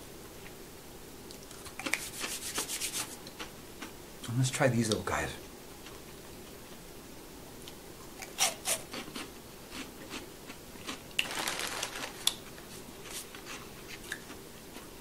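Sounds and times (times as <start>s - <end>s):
crisp snack crunching: 10.8s - 14.4s.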